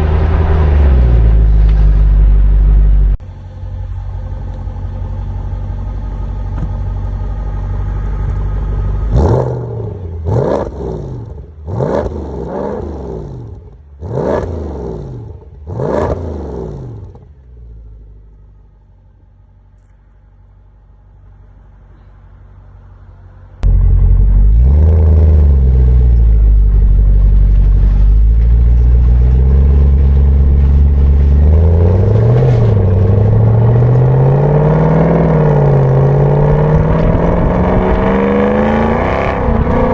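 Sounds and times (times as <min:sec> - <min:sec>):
car engine idling: 0:00.0 - 0:11.8, 0:16.8 - 0:34.7
car engine driving: 0:00.0 - 0:39.9
engine revving: 0:09.0 - 0:17.4, 0:23.6 - 0:39.9.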